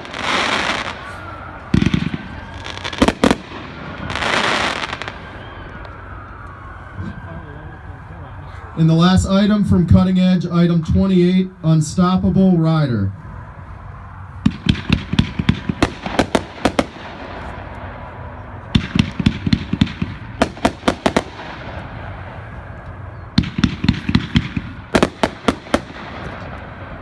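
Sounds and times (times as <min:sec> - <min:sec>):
fireworks cake rapid bangs: 0:00.0 - 0:05.3, 0:14.4 - 0:18.0, 0:18.7 - 0:22.3, 0:23.4 - 0:27.0.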